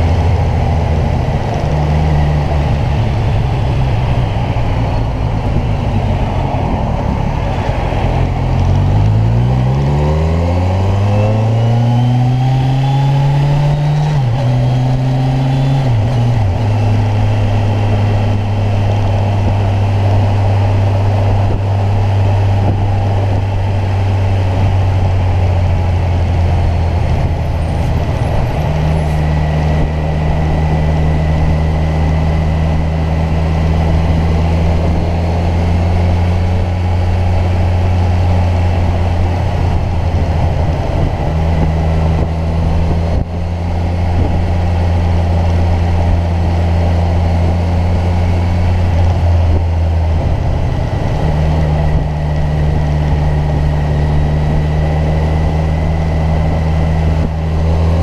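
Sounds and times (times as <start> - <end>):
motorcycle engine accelerating: 0.0 - 58.0.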